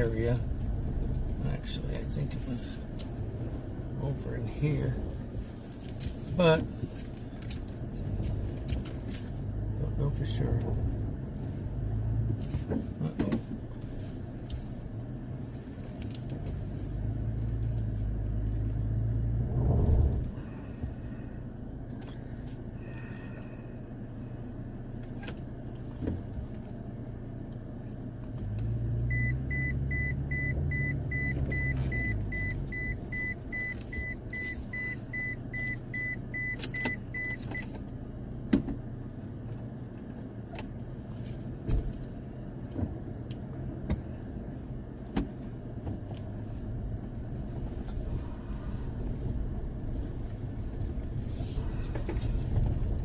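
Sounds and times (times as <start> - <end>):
electronic warning beeps: 29.1 - 37.4.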